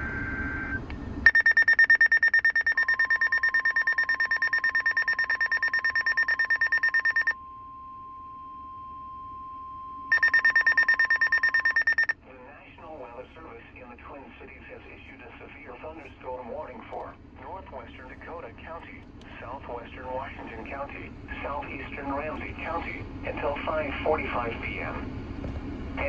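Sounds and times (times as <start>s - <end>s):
alarm beeping rapidly: 1.2s - 7.4s, 10.1s - 12.2s
steady alarm tone: 1.2s - 12.2s.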